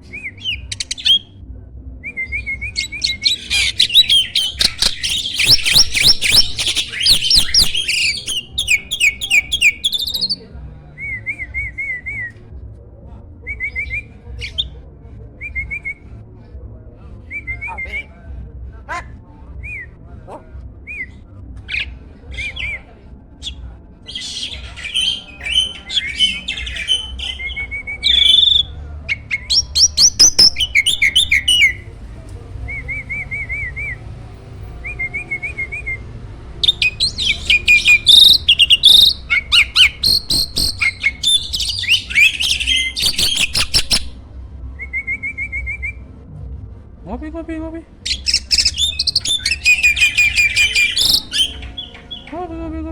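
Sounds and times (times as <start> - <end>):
starling singing: 0.0 - 1.3, 2.1 - 10.5, 21.7 - 44.2, 48.0 - 52.9.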